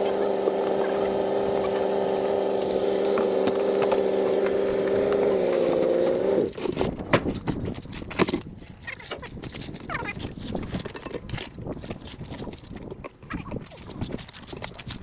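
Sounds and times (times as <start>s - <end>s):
small machine humming: 0.0s - 6.6s.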